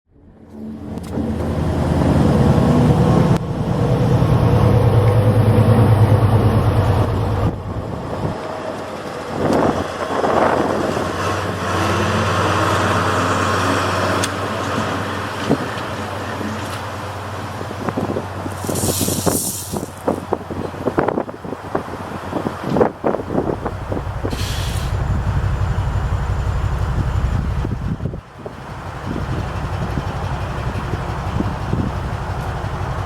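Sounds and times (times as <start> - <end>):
diesel locomotive engine running: 0.1 - 33.0
rushing noise: 18.4 - 21.2.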